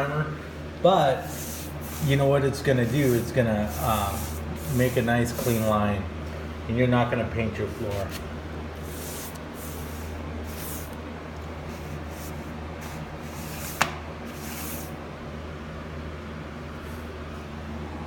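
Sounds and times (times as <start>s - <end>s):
paintbrush swishing on wood: 1.2s - 5.8s, 8.8s - 11.0s, 11.7s - 15.0s.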